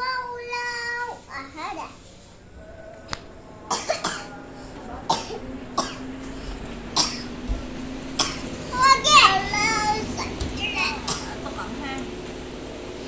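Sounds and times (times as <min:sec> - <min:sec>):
child coughing: 0:03.7 - 0:04.4, 0:05.1 - 0:07.4, 0:08.2 - 0:11.7.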